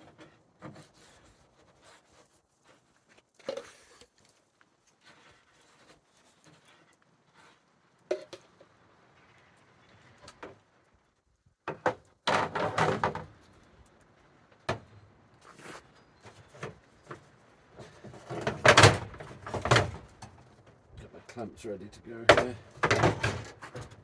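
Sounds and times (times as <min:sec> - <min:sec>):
clatter of clamps and parts: 0:11.7 - 0:13.5, 0:17.8 - 0:20.6, 0:22.3 - 0:24.0.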